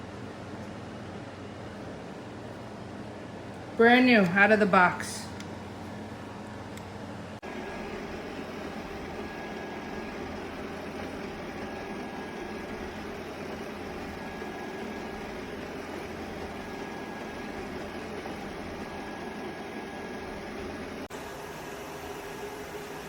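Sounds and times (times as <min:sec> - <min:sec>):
robot vacuum running: 0:07.4 - 0:23.0.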